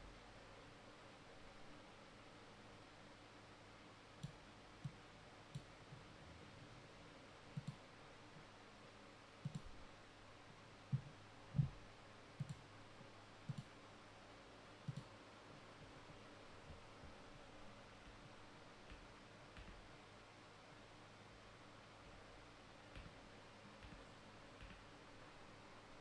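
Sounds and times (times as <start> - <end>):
low steady hiss: 0.0 - 26.0
faint clicks and light knocks: 18.0 - 19.9, 22.9 - 23.2, 23.8 - 24.9.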